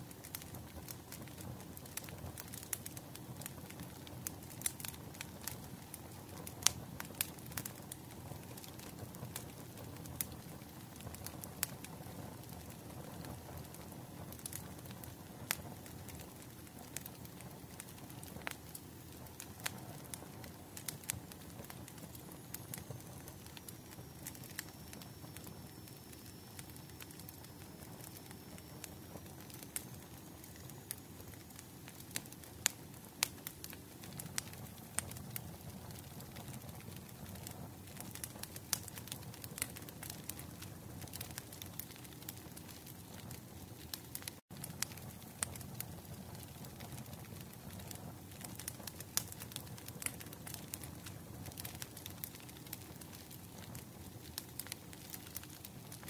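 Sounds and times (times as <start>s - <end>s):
firewood crackling and popping: 0.0s - 56.0s
flames rumbling: 0.0s - 56.0s.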